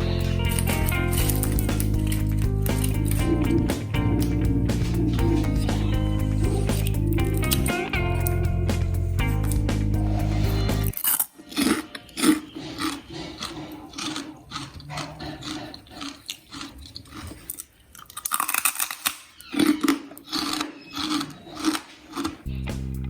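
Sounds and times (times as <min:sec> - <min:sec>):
background music: 0:00.0 - 0:11.0
crunchy food chewing: 0:09.4 - 0:22.8.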